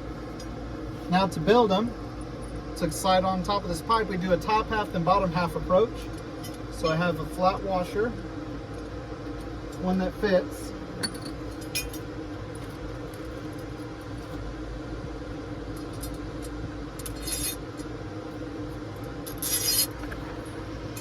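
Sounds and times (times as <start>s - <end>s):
steady low hum: 0.0s - 21.0s
small metal clinks and scrapes: 17.0s - 17.9s, 19.2s - 20.0s.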